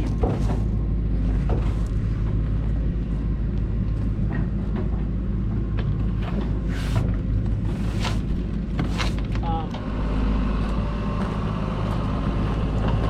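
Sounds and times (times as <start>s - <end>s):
excavator diesel engine: 0.0s - 13.0s.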